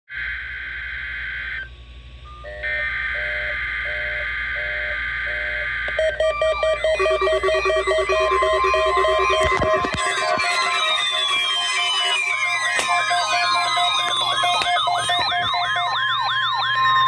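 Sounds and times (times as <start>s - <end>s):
low steady hum: 1.6s - 17.0s
repeating electronic beeps: 5.5s - 17.0s
high buzzy alert tone: 5.9s - 16.2s
synthesized music: 5.9s - 17.0s.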